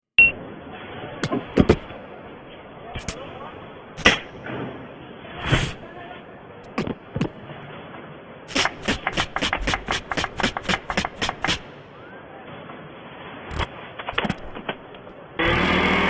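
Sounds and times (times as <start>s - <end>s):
beatbox mouth clicks: 8.5s - 11.6s.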